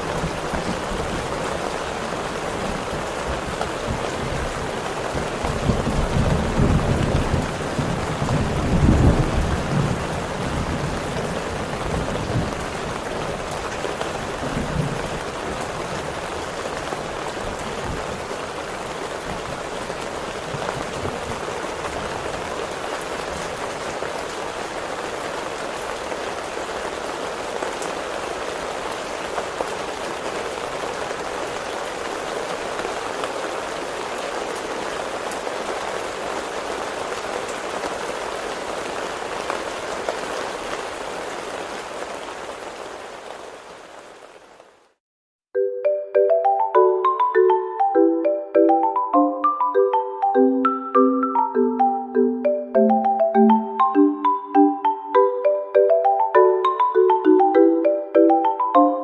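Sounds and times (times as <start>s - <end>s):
heavy rain: 0.0s - 45.0s.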